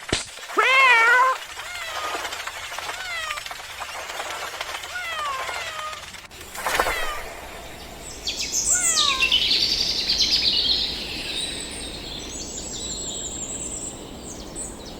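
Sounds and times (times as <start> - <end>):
animal falling cry: 0.5 - 9.4
animal squealing: 0.5 - 9.5
high whistling chirps: 6.3 - 13.9.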